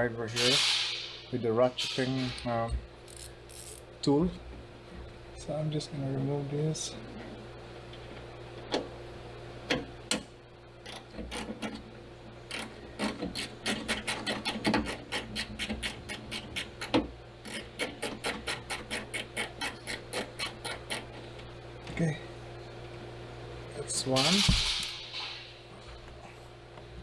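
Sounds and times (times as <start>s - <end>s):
ratcheting screwdriver clicking: 3.1s - 3.8s.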